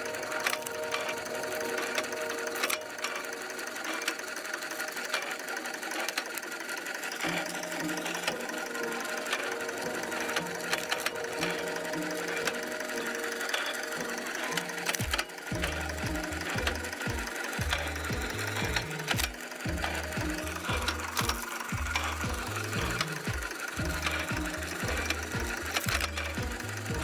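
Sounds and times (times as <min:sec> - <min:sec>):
machine hum: 0:00.0 - 0:27.0
steam machinery clattering: 0:00.0 - 0:27.0
low hum: 0:07.2 - 0:27.0.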